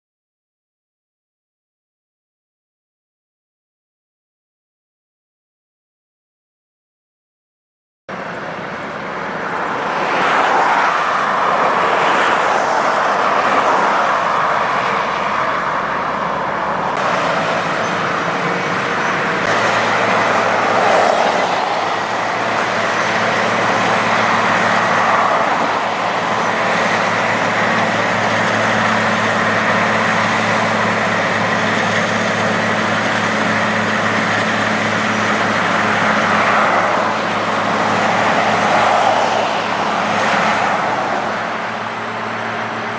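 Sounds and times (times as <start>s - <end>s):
milling machine grinding asphalt: 16.2s - 42.9s.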